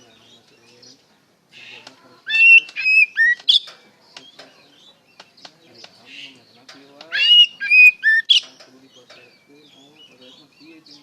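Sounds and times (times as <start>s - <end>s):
bird clicks and chattering: 1.7s - 9.4s
bird singing whistled notes: 2.3s - 3.7s, 6.2s - 11.0s.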